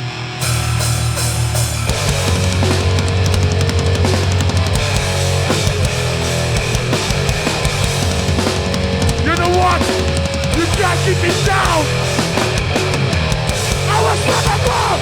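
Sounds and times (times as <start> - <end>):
bass guitar: 0.0 - 15.0
distorted guitar: 0.0 - 15.0
fast hard-hit drums: 0.4 - 15.0.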